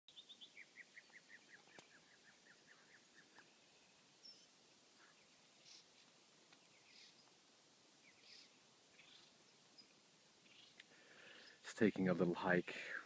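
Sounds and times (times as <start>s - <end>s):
bird chirps: 0.1s - 6.0s, 6.6s - 7.3s, 8.0s - 11.7s.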